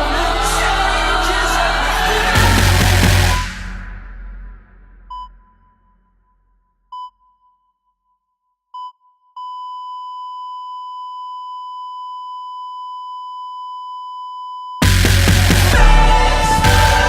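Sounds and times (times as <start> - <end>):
loud music: 0.0 - 5.1, 14.8 - 17.0
electronic beep tone: 5.1 - 5.4.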